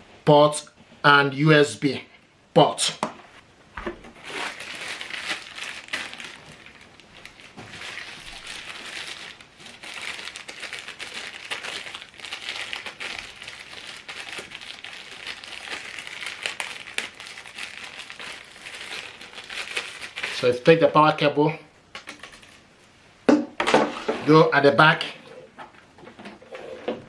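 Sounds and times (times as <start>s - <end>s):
packaging crinkling: 3.8s - 20.5s.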